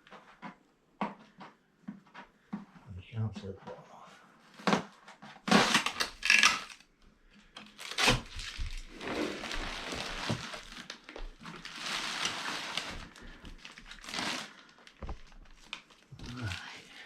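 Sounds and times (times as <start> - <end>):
packing material rustling and crinkling: 7.6 - 16.8.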